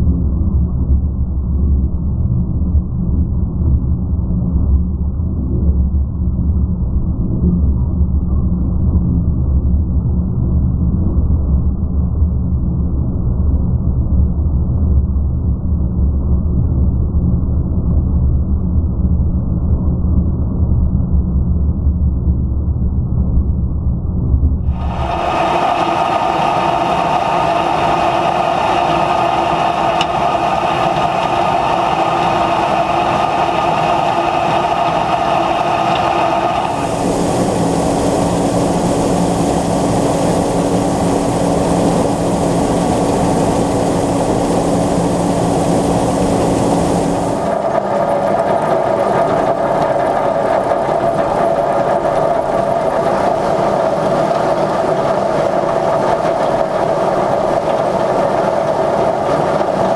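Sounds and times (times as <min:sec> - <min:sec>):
combine harvester droning: 0:24.7 - 0:59.9.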